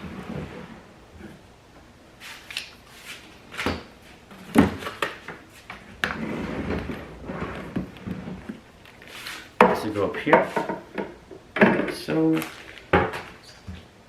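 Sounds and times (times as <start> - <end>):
knocks and clatters of parts: 9.6 - 13.4.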